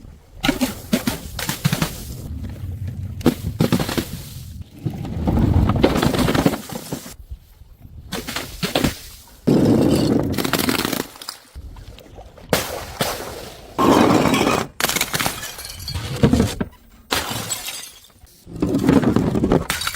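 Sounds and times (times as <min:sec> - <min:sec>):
glass bottles smashing: 0:13.8 - 0:16.2, 0:17.1 - 0:18.2.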